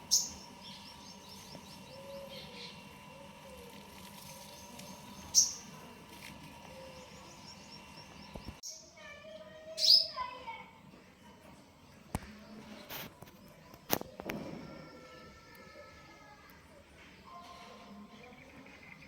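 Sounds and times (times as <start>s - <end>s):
bird chirping rapidly: 0.0s - 2.9s, 4.5s - 5.7s.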